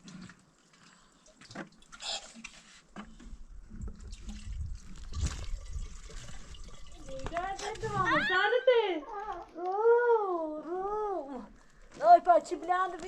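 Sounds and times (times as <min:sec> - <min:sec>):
water splashing and dripping: 0:00.0 - 0:09.9.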